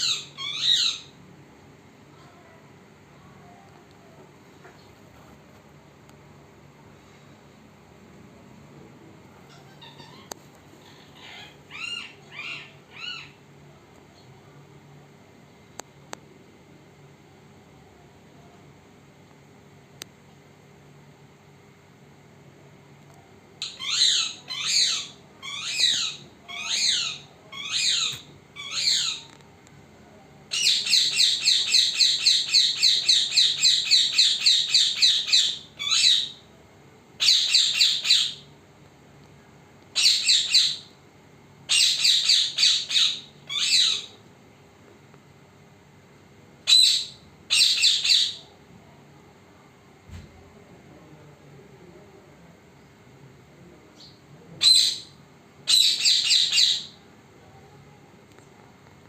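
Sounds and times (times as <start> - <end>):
parrot squawking: 0.0 - 1.1, 9.5 - 13.4, 23.6 - 29.3, 30.5 - 36.4, 37.2 - 38.4, 40.0 - 40.9, 41.7 - 44.2, 46.6 - 48.5, 54.6 - 55.1, 55.7 - 57.0.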